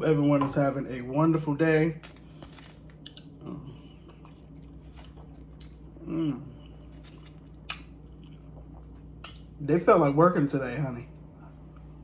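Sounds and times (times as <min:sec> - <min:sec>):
person chewing food: 0:02.2 - 0:09.6.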